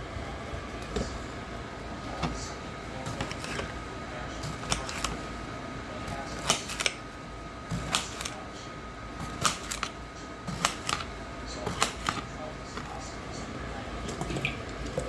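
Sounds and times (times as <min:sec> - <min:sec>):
faint high hum: 0:00.0 - 0:15.0
hands handling things in kitchen: 0:02.1 - 0:03.8, 0:04.4 - 0:05.3, 0:09.2 - 0:13.2.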